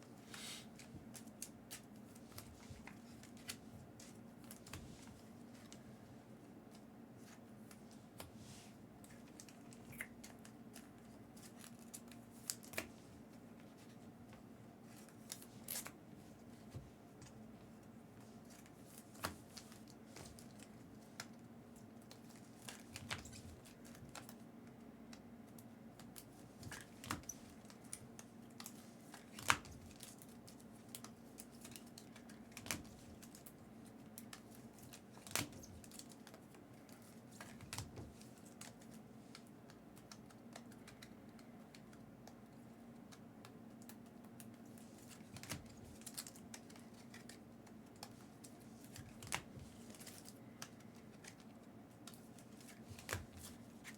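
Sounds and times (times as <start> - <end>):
cards and plastic sleeves handled: 0.2 - 5.9, 6.6 - 53.9.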